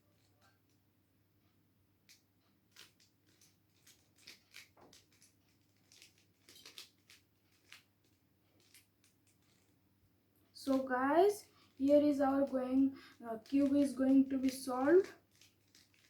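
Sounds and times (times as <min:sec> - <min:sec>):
plastic puzzle cube clicking: 0:11.8 - 0:16.0.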